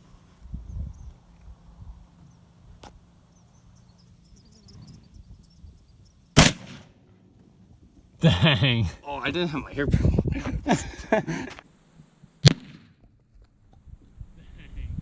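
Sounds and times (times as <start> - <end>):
quiet outdoor background: 0.0 - 15.0
rifle shot with echo: 6.4 - 7.0, 12.4 - 12.9.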